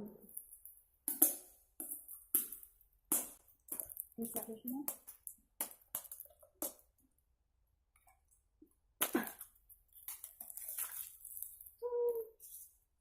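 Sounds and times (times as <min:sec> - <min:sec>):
packaging crinkling and rustling: 0:09.1 - 0:11.8.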